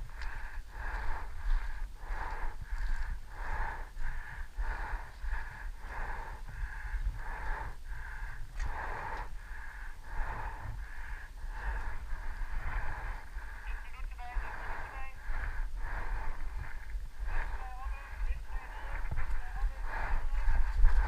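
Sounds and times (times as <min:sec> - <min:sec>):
low rumble: 0:00.0 - 0:21.0
person panting heavily: 0:00.0 - 0:21.0.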